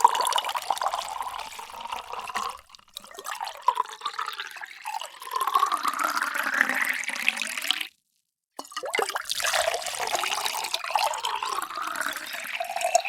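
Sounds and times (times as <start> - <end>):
water pouring into a container: 0.0 - 8.0, 8.6 - 13.0.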